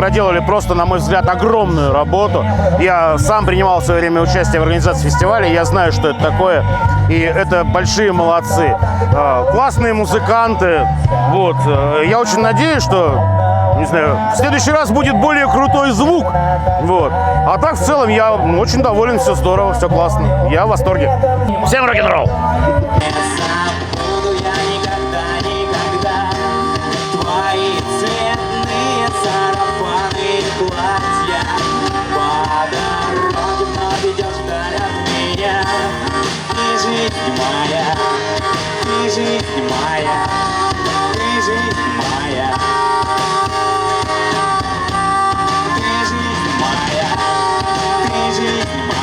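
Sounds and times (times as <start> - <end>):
person singing: 0.0 - 49.0
rock guitar: 21.2 - 49.0.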